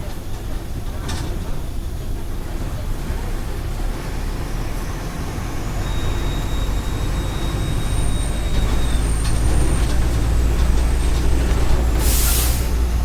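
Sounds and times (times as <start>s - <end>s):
diesel bus engine running: 0.0s - 13.0s
short hiss: 12.0s - 12.8s.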